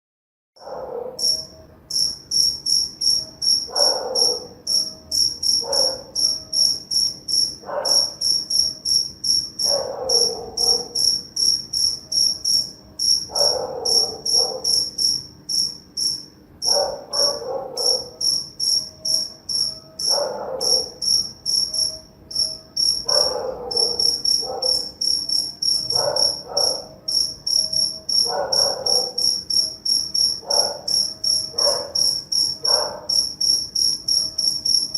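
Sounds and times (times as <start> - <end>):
dog barking: 0.6 - 1.4, 3.6 - 4.6, 5.6 - 6.3, 7.6 - 8.2, 9.6 - 11.2, 13.3 - 15.0, 16.6 - 18.4, 20.0 - 21.1, 23.0 - 25.0, 25.9 - 27.0, 28.2 - 29.4, 30.4 - 33.3
cricket chirping: 0.6 - 34.9.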